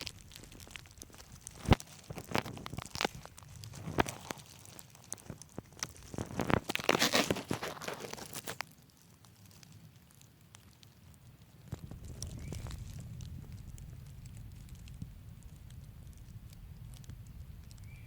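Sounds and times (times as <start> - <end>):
camera handling crackles: 0.4 - 8.7.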